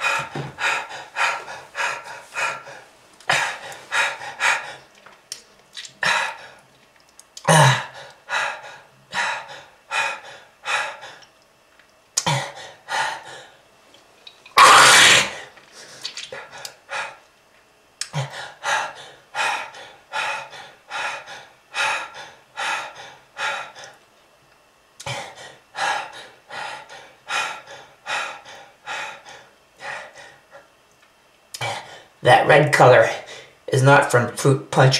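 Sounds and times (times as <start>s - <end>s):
person coughing: 7.4s - 7.9s, 14.6s - 15.4s.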